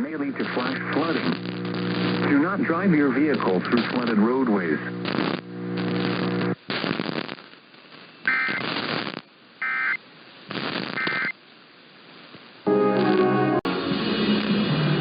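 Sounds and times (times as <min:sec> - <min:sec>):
radio static: 0:00.0 - 0:11.4
loud music: 0:12.7 - 0:15.0.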